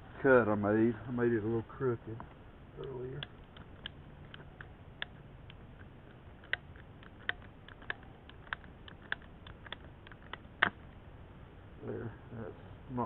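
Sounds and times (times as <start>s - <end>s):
knife shaving plastic clicks: 2.8s - 11.0s.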